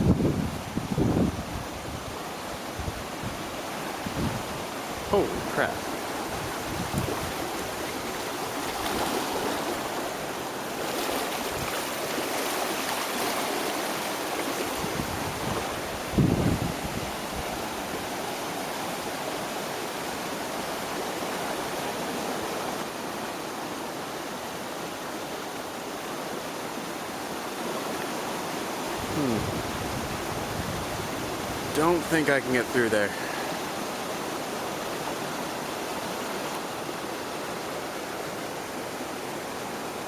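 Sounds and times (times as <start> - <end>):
floodwater rushing: 0.0 - 40.0.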